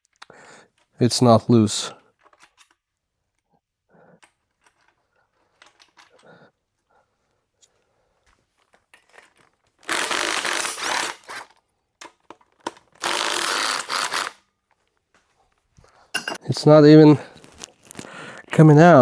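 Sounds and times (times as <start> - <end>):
ratchet wrench spinning: 9.8 - 11.5, 13.0 - 14.4.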